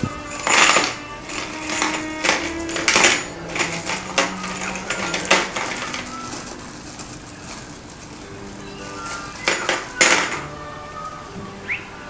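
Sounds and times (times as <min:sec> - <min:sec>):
soft background music: 0:00.0 - 0:12.0
light metallic clicks and clinks: 0:00.1 - 0:10.5.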